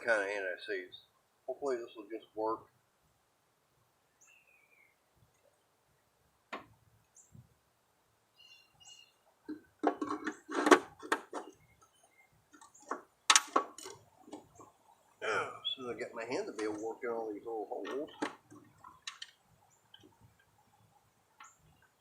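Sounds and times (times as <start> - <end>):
faint bird chirps: 4.1 - 6.0, 8.3 - 9.3, 11.4 - 12.9.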